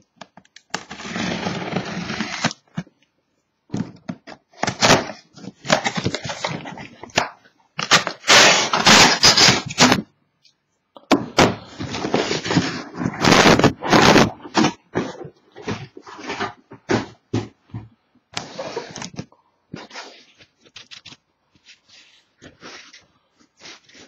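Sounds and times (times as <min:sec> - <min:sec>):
cardboard scraping and sliding: 0:00.9 - 0:02.6, 0:11.4 - 0:17.5, 0:18.4 - 0:19.2.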